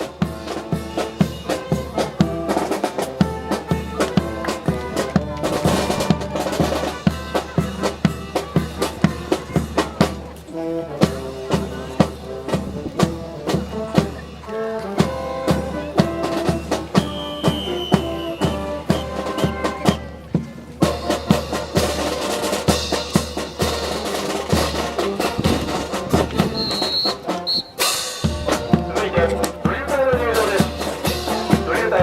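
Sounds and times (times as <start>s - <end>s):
brass band playing: 0.0s - 16.6s, 21.0s - 29.2s
snare and bass drum beat: 25.2s - 28.7s.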